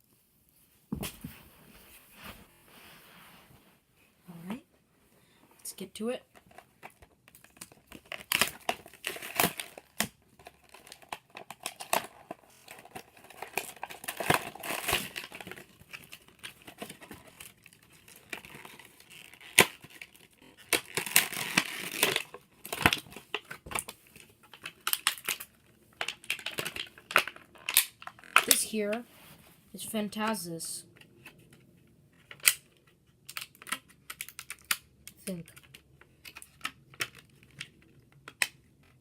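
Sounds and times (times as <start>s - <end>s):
packaging crinkling and tearing: 6.3s - 28.6s, 32.2s - 39.0s.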